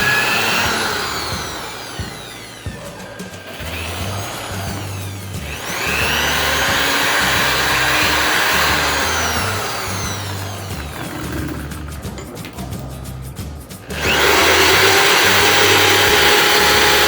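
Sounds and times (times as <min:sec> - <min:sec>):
drum sander motor whirring: 0:00.0 - 0:12.6, 0:13.7 - 0:17.0
background music with bass line: 0:00.0 - 0:17.0.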